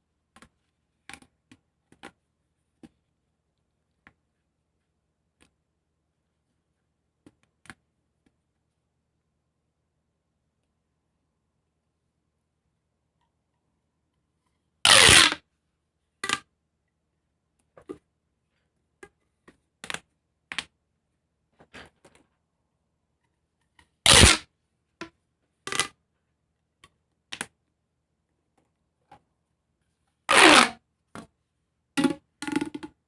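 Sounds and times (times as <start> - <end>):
pop tube toy loud bursts: 14.9 - 15.4, 24.1 - 24.4, 30.3 - 30.8.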